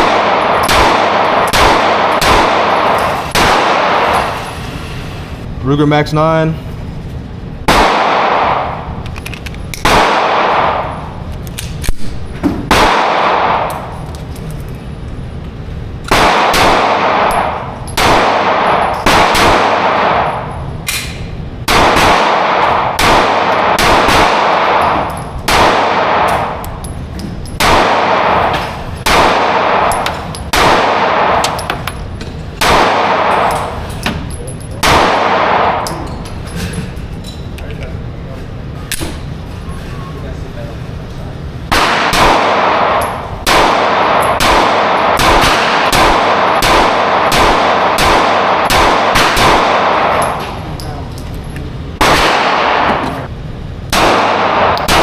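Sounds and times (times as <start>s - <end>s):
pistol shots with ringing echo: 0.0s - 4.4s, 7.7s - 8.9s, 9.8s - 11.2s, 12.0s - 14.0s, 16.0s - 26.8s, 27.6s - 31.9s, 32.6s - 33.8s, 34.8s - 36.1s, 41.7s - 50.7s, 52.0s - 53.3s, 53.9s - 55.0s.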